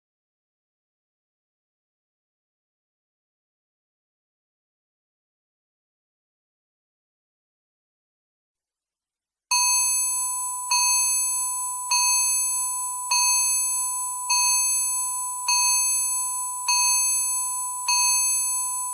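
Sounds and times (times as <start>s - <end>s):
bell-like timer chime: 9.5s - 18.9s.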